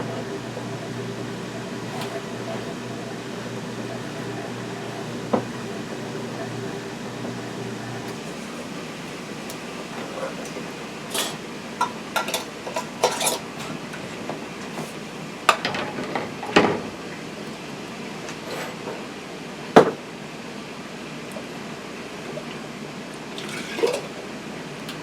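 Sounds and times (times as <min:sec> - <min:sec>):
glass jars and utensils clinking: 0:12.2 - 0:13.5, 0:23.4 - 0:24.1.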